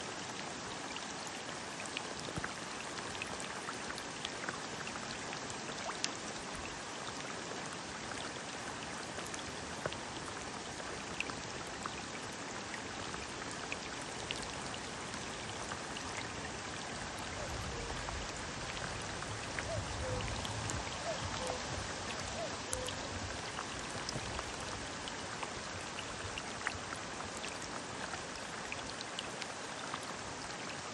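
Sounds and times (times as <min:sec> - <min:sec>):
running water hiss: 0:00.0 - 0:30.9
water drops dripping: 0:19.5 - 0:23.1.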